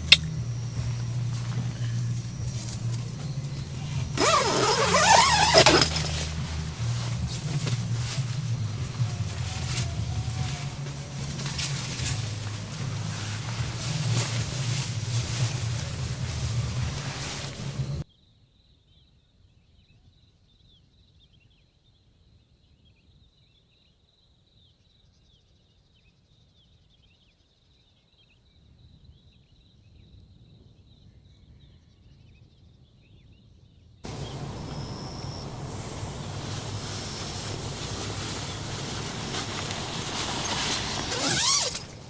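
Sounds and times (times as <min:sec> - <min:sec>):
heavy rain rushing: 0:00.0 - 0:18.0, 0:34.1 - 0:42.0
insects chirping: 0:00.0 - 0:18.0, 0:34.1 - 0:42.0.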